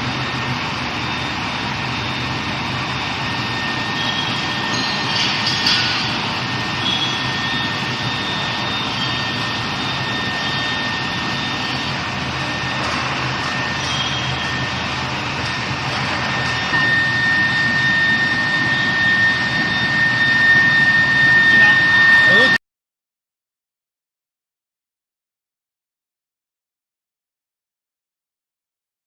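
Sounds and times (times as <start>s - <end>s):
industrial machinery noise: 0.0s - 22.6s
steady high whine: 0.0s - 22.6s.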